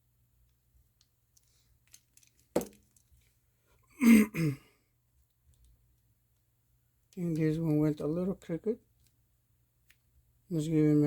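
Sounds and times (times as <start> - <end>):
man clearing his throat: 4.0 - 4.7.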